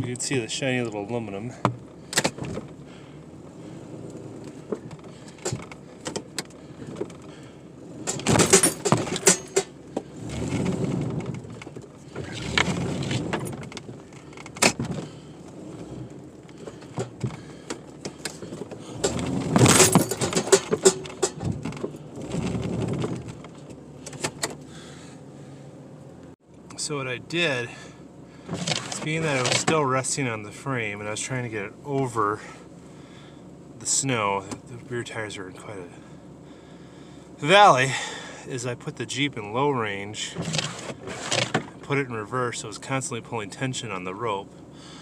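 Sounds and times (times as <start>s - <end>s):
vehicle engine revving: 1.5s - 26.3s
clicks and rattles: 8.0s - 9.8s, 16.4s - 24.6s.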